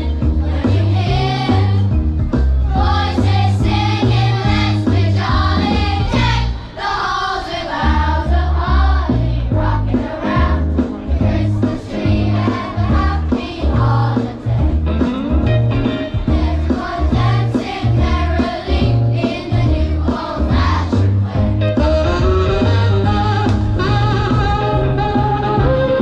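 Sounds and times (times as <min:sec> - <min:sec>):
choir singing: 0:00.0 - 0:01.9, 0:02.7 - 0:14.8, 0:16.3 - 0:21.6
backing track with heavy bass: 0:00.0 - 0:06.9, 0:07.7 - 0:26.0.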